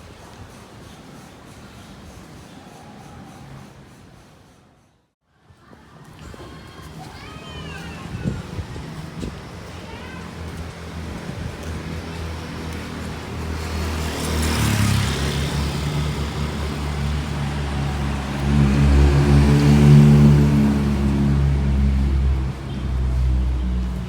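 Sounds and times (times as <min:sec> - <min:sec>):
motor vehicle engine running: 0:10.7 - 0:24.0
vehicle rushing past: 0:11.0 - 0:24.0.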